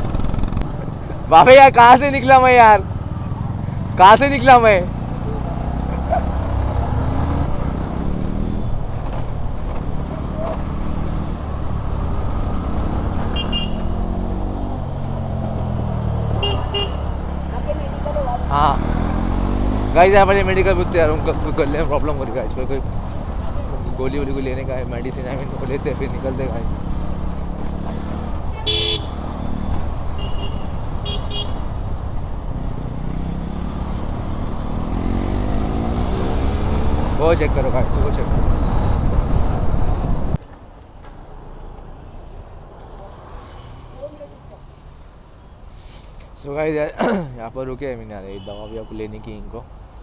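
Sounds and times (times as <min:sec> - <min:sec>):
motorcycle engine running: 0:00.0 - 0:40.4
road and wind noise: 0:00.0 - 0:50.0
street traffic rumble: 0:00.0 - 0:50.0
short horn toots: 0:13.3 - 0:14.0, 0:16.4 - 0:17.2, 0:28.6 - 0:29.2
vehicle horn blasts and beeps: 0:13.3 - 0:14.0, 0:16.4 - 0:17.3, 0:28.5 - 0:29.2, 0:30.2 - 0:31.7, 0:48.4 - 0:48.9.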